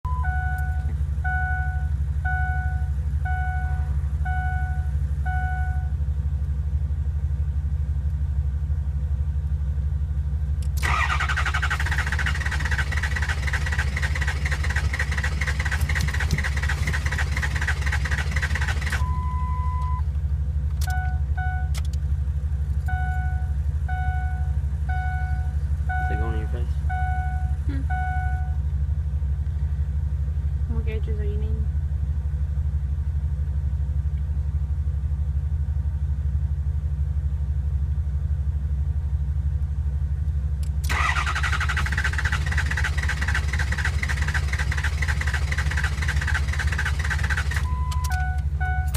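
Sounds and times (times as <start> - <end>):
long tone: 0.0 - 6.0, 22.9 - 28.6
steady low hum: 0.0 - 41.0
starter cranking diesel engine: 10.6 - 20.0, 40.6 - 48.9
clicks: 47.6 - 48.9.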